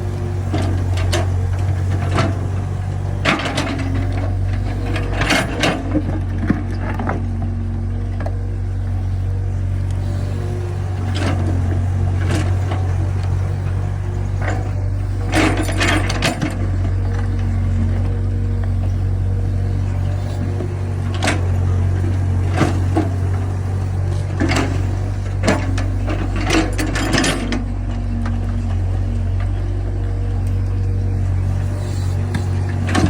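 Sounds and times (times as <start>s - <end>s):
excavator diesel drone: 0.0s - 33.0s
hydraulic whine: 0.0s - 33.0s
metallic clanks and knocks: 11.1s - 33.0s.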